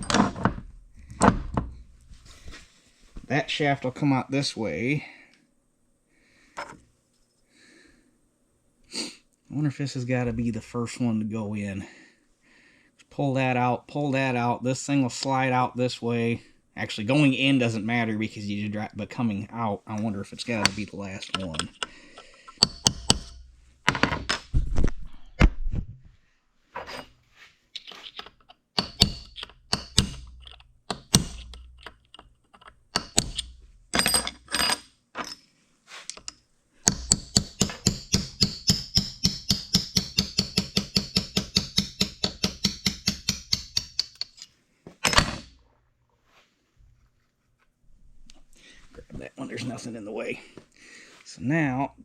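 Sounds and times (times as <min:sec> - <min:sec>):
hammer striking steel punch: 0:22.6 - 0:23.4, 0:28.8 - 0:30.3, 0:30.9 - 0:31.5, 0:36.9 - 0:44.2
fast light metal taps: 0:36.9 - 0:44.4.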